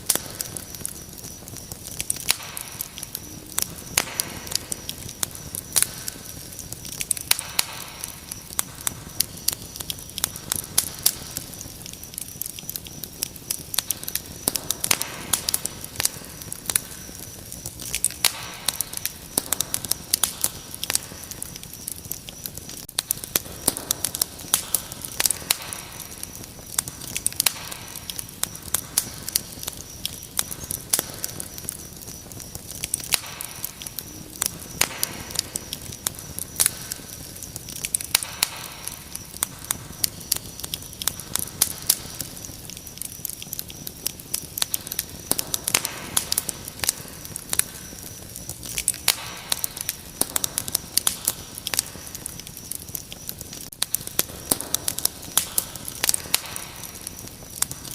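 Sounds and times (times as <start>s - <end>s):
crickets chirring: 0.0s - 57.9s
wood fire crackling: 0.0s - 57.9s.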